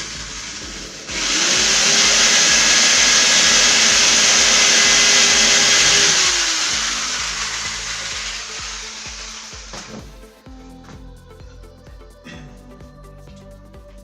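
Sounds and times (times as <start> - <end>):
power tool motor whining: 0.0 - 10.3.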